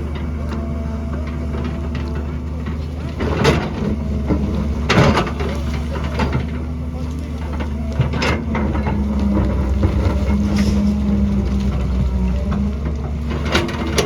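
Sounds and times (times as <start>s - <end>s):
excavator diesel engine running: 0.0s - 14.0s
bucket scraping through rock: 9.5s - 11.4s.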